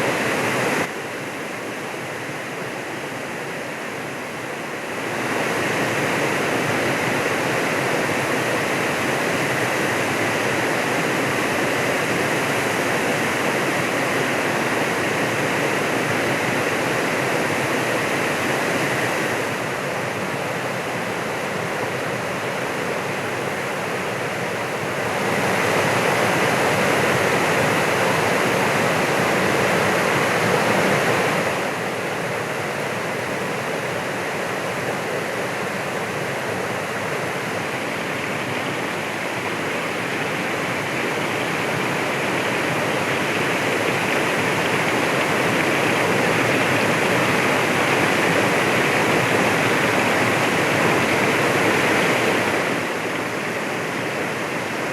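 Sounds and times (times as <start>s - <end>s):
waterfall rushing: 34.3s - 54.9s.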